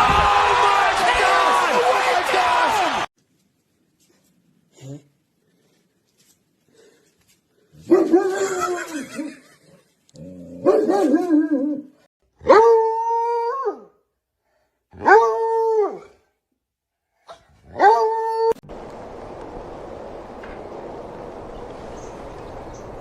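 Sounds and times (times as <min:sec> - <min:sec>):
dog howling: 0:17.8 - 0:18.6
steady rushing noise: 0:18.6 - 0:23.0.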